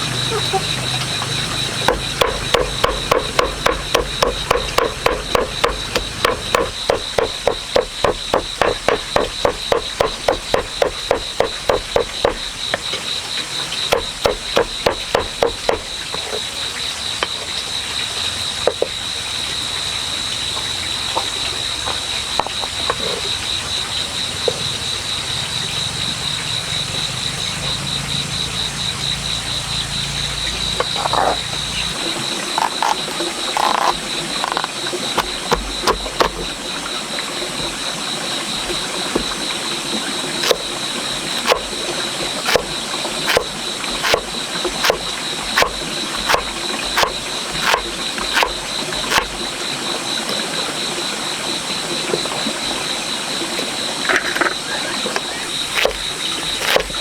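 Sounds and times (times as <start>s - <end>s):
fast repeated insect pulses: 0.0s - 16.2s, 40.2s - 49.6s, 55.3s - 57.0s
insect trilling: 0.0s - 18.9s, 26.2s - 51.3s, 52.8s - 57.0s.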